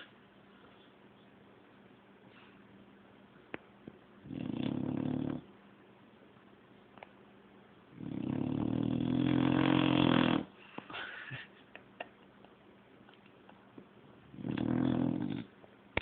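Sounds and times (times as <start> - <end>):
quiet breathing: 2.2 - 2.7
pet snoring: 4.2 - 5.5, 7.9 - 10.5, 14.2 - 15.5.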